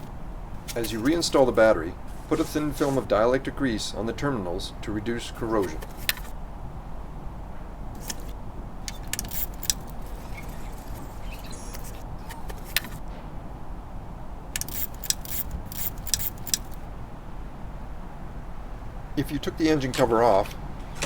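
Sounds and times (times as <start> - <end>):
tools clicking on battery terminals: 0.0 - 1.6, 8.0 - 13.0, 14.6 - 16.8
steady low hum: 0.0 - 21.0.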